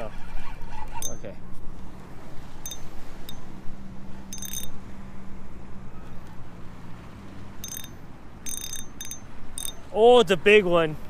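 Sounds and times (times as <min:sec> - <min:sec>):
fishing reel ratcheting: 0:04.3 - 0:04.8, 0:07.6 - 0:09.8.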